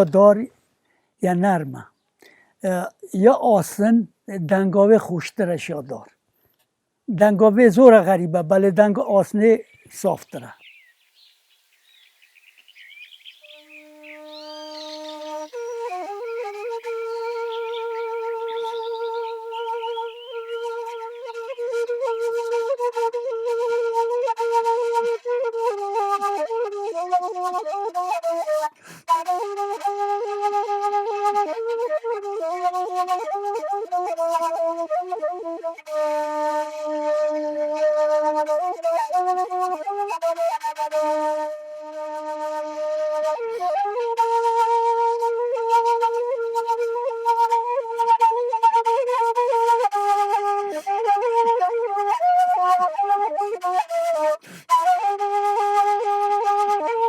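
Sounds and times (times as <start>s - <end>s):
end-blown flute melody: 12.0s - 57.0s.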